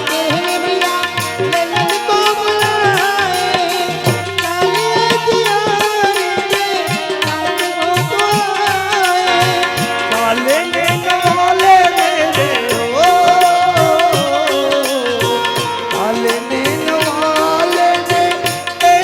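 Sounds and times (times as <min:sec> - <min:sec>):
ornamented melody instrument: 0:00.0 - 0:19.0.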